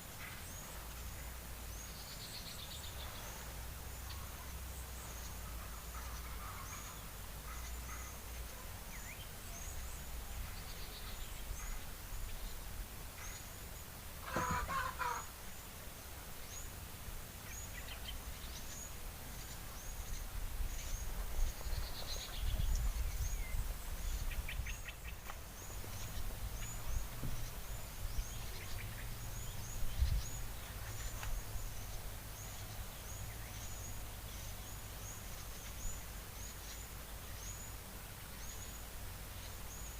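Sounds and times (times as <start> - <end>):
birds chirping: 0.0 - 39.9
wind rumble on microphone: 20.0 - 25.0, 25.8 - 31.8.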